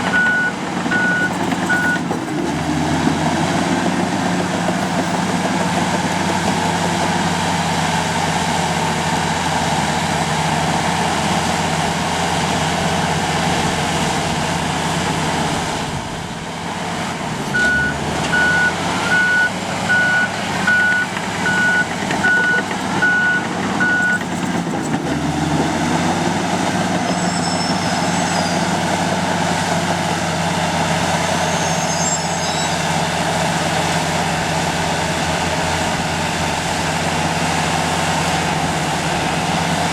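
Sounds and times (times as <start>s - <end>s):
bulldozer diesel engine running: 0.0s - 39.9s
reverse alarm beeping: 0.1s - 2.1s, 17.6s - 24.2s.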